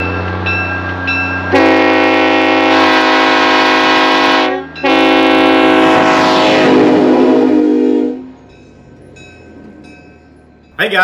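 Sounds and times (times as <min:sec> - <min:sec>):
train horn chord: 0:01.5 - 0:08.4.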